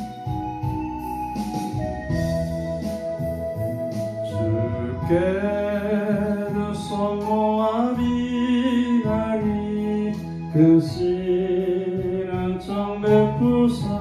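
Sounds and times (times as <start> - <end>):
keyboard chords: 0.0 - 14.0
person singing hymn: 4.2 - 14.0.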